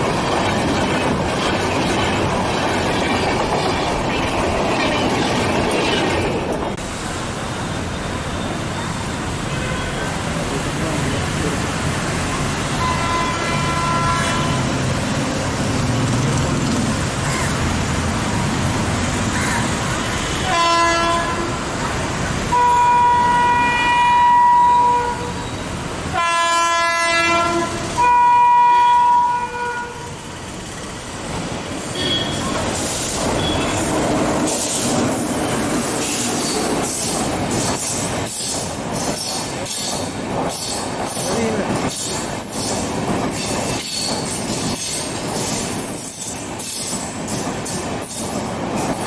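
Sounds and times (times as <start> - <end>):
train wheels clacking over rail joints: 0.0 - 6.8, 31.4 - 49.0
train horn blasts: 12.8 - 14.8, 20.1 - 21.8, 22.5 - 30.2, 31.9 - 32.5.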